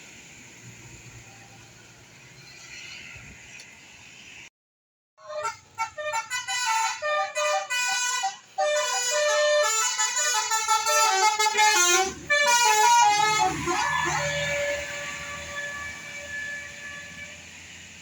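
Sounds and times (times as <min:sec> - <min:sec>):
musical bus air horn: 0:05.2 - 0:17.6.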